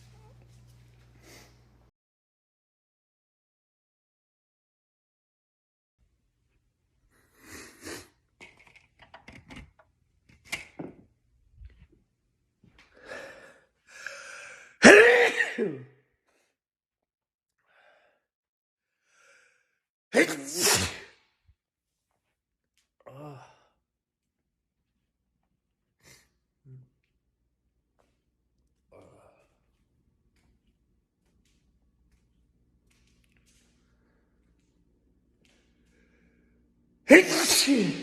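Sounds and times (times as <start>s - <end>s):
sniffs: 1.2s - 1.6s
man sneezing: 14.7s - 15.9s, 20.2s - 21.2s, 37.1s - 38.0s.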